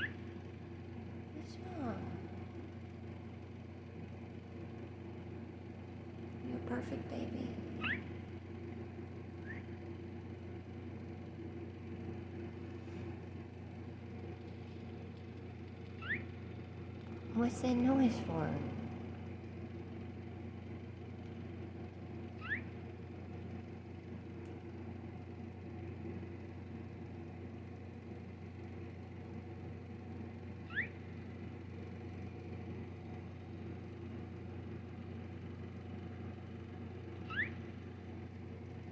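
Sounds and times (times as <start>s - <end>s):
steady low hum: 0.0s - 38.9s
baby squirrel squeaking: 7.6s - 8.3s, 15.9s - 16.6s, 22.3s - 22.8s, 30.6s - 31.2s, 37.2s - 37.8s.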